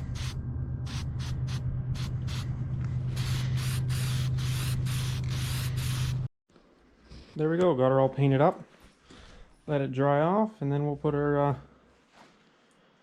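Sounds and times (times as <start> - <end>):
spray paint hissing bursts: 0.0 - 2.5, 3.1 - 6.3
steady low hum: 0.0 - 6.3.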